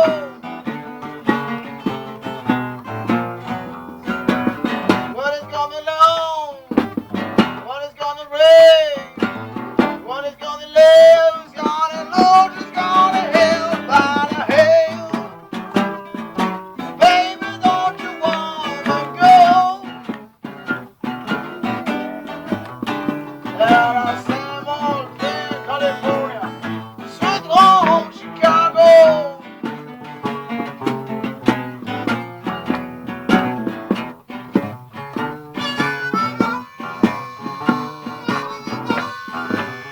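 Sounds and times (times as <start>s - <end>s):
guitar accompaniment: 0.0s - 39.9s
lead guitar bent notes: 11.4s - 29.2s, 29.8s - 39.9s.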